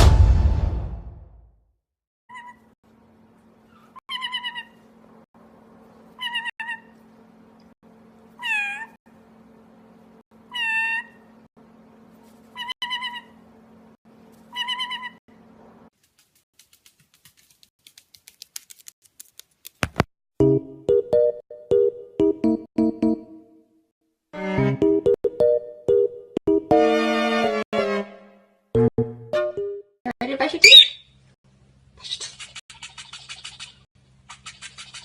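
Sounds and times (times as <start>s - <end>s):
cat meowing: 8.4s - 9.0s.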